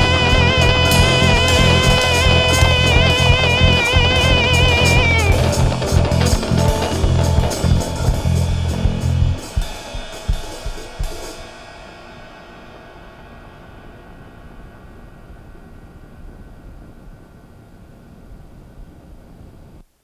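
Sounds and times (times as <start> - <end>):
rock band playing: 0.0 - 11.3
drum hits and cymbal strikes: 0.0 - 14.3
faint steady hiss: 0.3 - 20.0.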